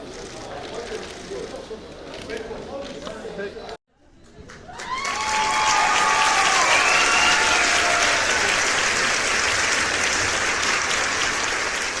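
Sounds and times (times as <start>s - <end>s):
crowd applauding: 4.2s - 12.0s.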